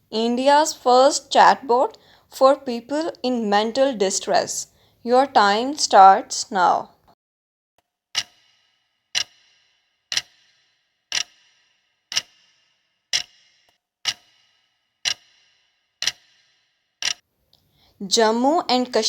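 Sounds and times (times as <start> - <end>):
clock ticking: 9.1 - 9.4, 10.1 - 10.5, 11.1 - 11.5, 12.1 - 12.4, 13.1 - 14.4, 15.0 - 15.4, 16.0 - 16.4.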